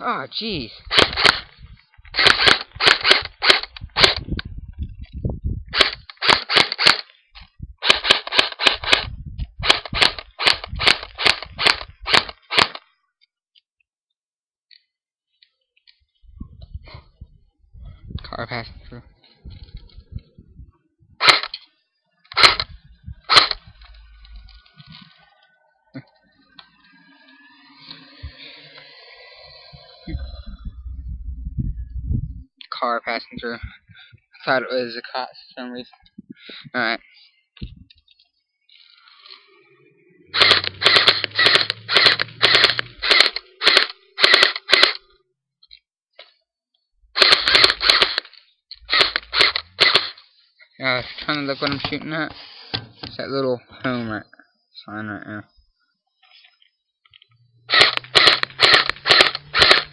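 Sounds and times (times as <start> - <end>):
airsoft rifle shots: 0.9 - 1.5, 2.1 - 4.3, 5.7 - 7.1, 7.8 - 12.8, 21.2 - 21.5, 22.3 - 23.6, 40.4 - 45.0, 47.2 - 48.3, 48.9 - 50.2, 57.7 - 59.9.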